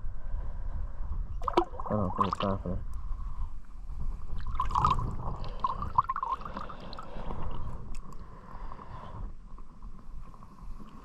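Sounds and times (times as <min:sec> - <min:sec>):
river water running: 0:01.4 - 0:02.6
water splashes: 0:01.4 - 0:02.7, 0:04.4 - 0:07.5.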